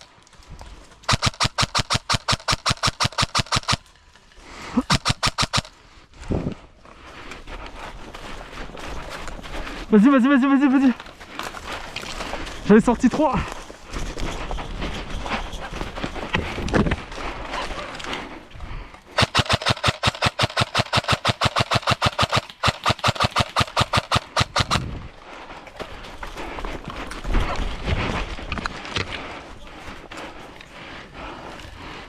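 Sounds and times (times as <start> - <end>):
airsoft gun rapid shots: 1.1 - 3.8, 4.9 - 5.7, 19.2 - 24.9.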